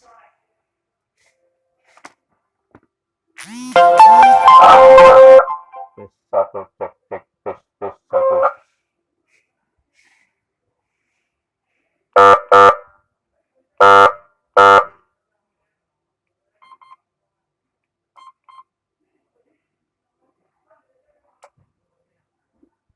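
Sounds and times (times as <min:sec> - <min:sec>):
siren horn blasts: 0:03.4 - 0:05.9.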